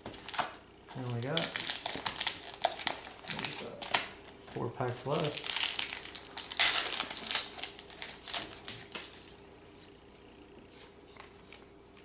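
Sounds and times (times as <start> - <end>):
card pack wrapper crackling: 1.0 - 9.2.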